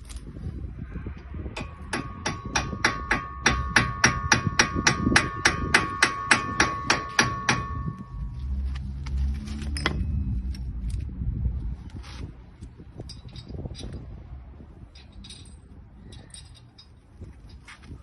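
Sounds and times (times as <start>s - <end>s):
hammer striking metal stud: 1.6s - 8.1s
metallic ringing tone: 5.3s - 8.6s.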